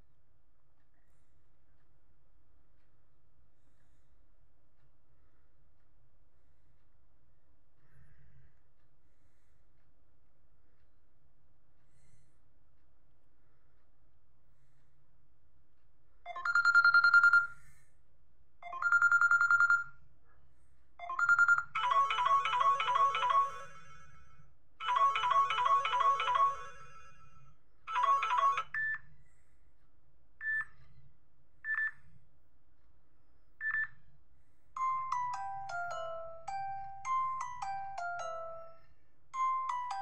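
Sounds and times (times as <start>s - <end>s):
phone ringtones: 16.3s - 17.6s, 18.6s - 20.0s, 21.0s - 24.2s, 24.8s - 29.0s, 34.8s - 38.8s, 39.4s - 40.0s.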